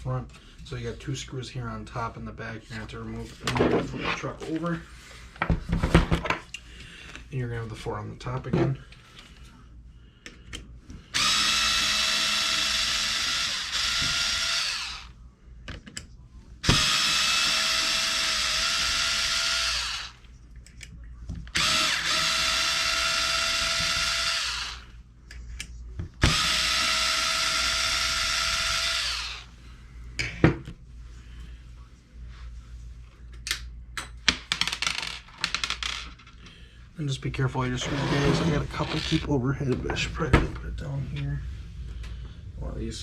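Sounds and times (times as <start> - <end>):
power driver whining: 11.1 - 15.1, 16.6 - 20.2, 21.5 - 24.9, 26.2 - 29.5
small clicks and handling noises: 20.2 - 21.5, 25.2 - 26.2.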